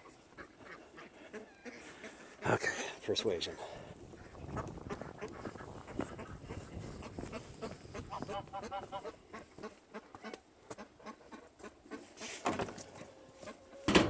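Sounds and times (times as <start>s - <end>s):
duck quacking: 0.0s - 2.6s, 4.9s - 12.2s.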